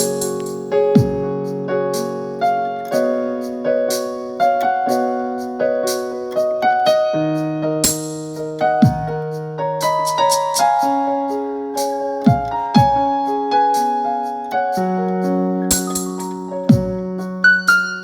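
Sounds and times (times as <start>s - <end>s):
electronic keyboard piano melody: 0.0s - 18.0s.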